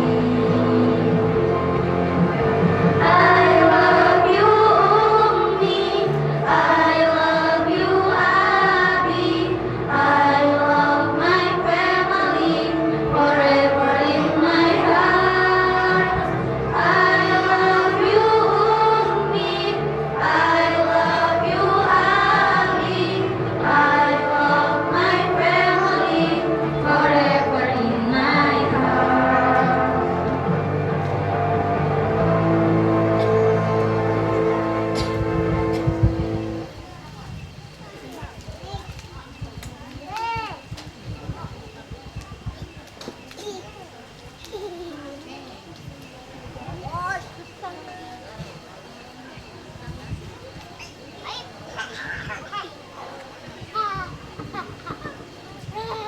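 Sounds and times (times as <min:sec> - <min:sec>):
choir singing: 0:00.0 - 0:36.7
low musical accompaniment: 0:00.0 - 0:36.8.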